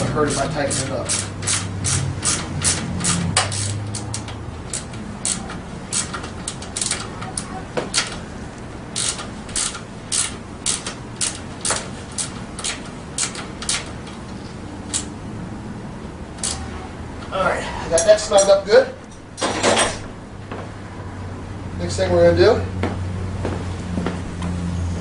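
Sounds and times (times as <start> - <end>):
socket ratchet clicking: 1.1 - 8.2, 8.9 - 15.1, 16.4 - 16.6.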